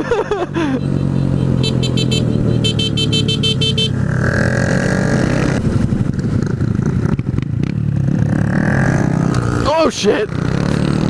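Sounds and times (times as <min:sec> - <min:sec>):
motorcycle engine running: 0:00.8 - 0:11.0
wind buffeting microphone: 0:05.0 - 0:07.7.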